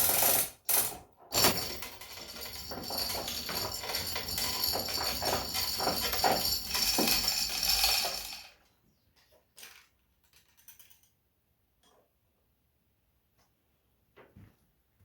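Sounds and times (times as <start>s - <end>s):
metallic rattling and jingling: 1.3s - 8.6s.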